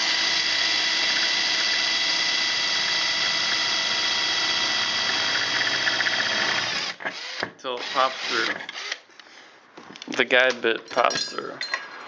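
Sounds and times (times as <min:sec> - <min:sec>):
electric drill drilling through metal: 0:00.0 - 0:09.0.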